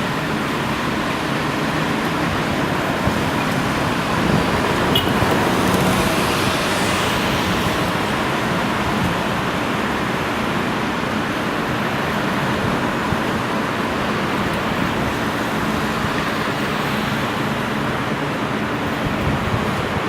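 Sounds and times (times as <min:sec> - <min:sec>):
streetcar running rumble: 0:00.0 - 0:20.0.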